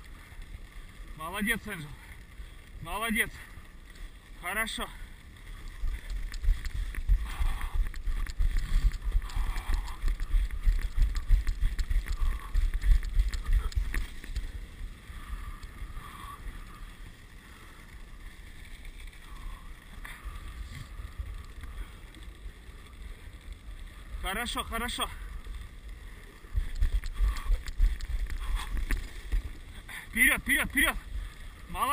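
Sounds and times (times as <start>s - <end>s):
wind buffeting microphone: 5.6s - 16.0s
small clicks and knocks: 7.8s - 14.6s.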